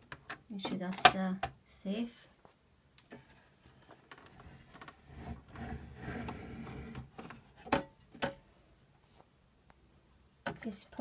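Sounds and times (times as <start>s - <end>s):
plastic parts rustling and scraping: 3.1s - 8.4s.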